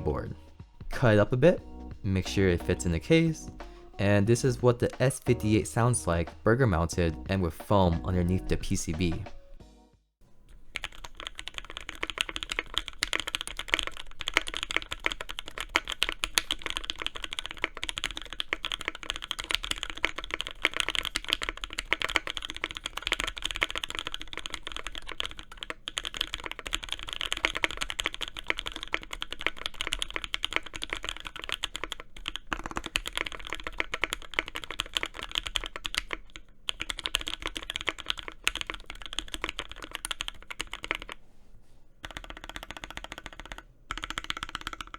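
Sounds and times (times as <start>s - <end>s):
mechanical keyboard typing: 10.5s - 41.2s, 42.0s - 44.9s.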